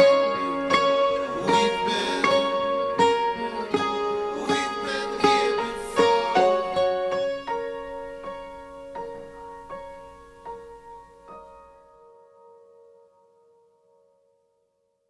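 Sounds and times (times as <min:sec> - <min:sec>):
plucked instrumental music: 0:00.0 - 0:11.8.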